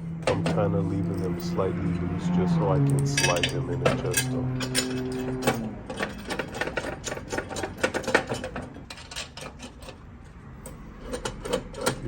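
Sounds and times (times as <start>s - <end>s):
metal hardware clinks: 2.9s - 10.0s.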